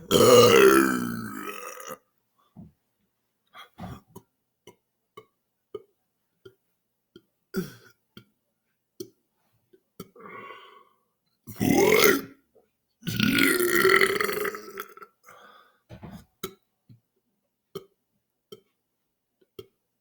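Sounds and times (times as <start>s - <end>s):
man belching: 0.0s - 2.0s, 11.5s - 12.4s, 13.1s - 15.0s
throat and mouth clicks: 17.7s - 18.8s, 19.4s - 19.8s.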